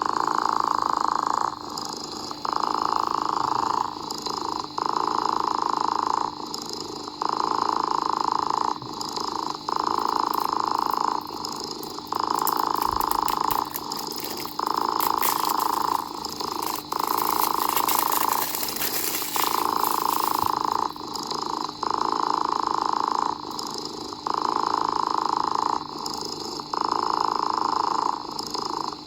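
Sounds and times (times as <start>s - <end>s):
cat purring: 0.1s - 21.2s.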